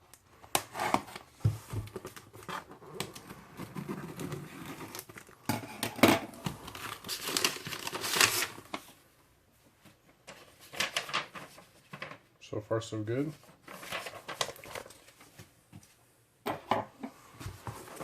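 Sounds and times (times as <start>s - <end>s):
packaging crinkling and rustling: 0.6s - 5.5s, 6.3s - 9.0s, 10.3s - 12.2s, 13.5s - 15.5s
packaging tearing: 6.6s - 8.8s.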